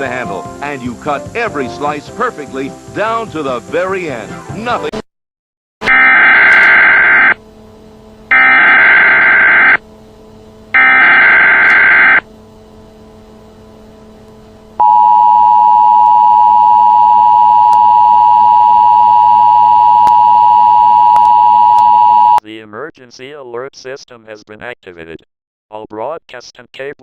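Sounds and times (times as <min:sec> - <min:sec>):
data header bursts: 0:08.3 - 0:09.8, 0:10.8 - 0:12.2
two-tone attention signal: 0:08.3 - 0:09.8, 0:10.8 - 0:12.2, 0:14.8 - 0:22.4.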